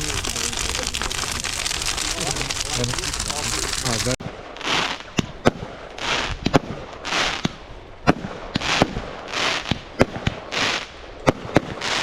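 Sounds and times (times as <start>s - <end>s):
fireworks hissing bursts: 0.0s - 5.1s
fireworks bangs: 0.0s - 12.0s.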